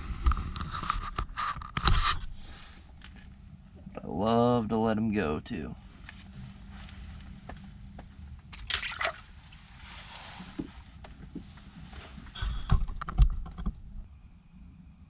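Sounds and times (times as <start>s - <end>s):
water sloshing: 8.4s - 10.8s
fish splashing into water: 8.5s - 9.4s.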